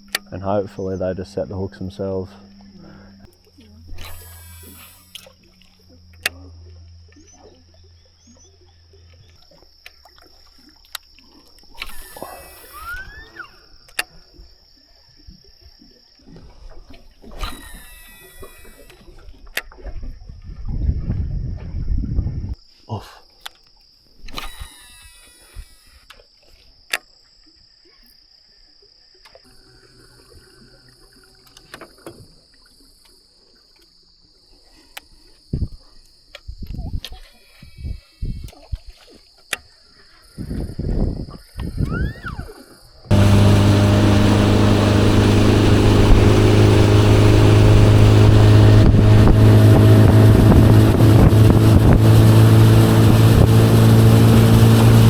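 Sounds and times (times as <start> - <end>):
low hum: 0.0 - 14.7, 43.1 - 55.0
frogs calling: 0.0 - 14.8
high insect drone: 0.0 - 19.4, 24.4 - 26.1, 29.4 - 33.1
crickets chirping: 0.0 - 48.8
brief whirring: 1.0 - 9.6, 10.6 - 14.2, 17.2 - 19.3, 24.2 - 26.0, 43.1 - 55.0
sharp clicks: 10.8 - 14.2.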